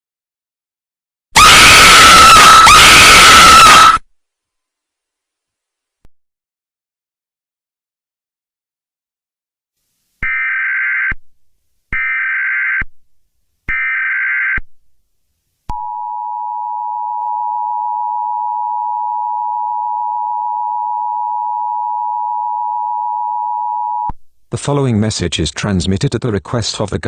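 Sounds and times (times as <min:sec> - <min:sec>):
screechy digital data tones: 0:01.4 - 0:04.0.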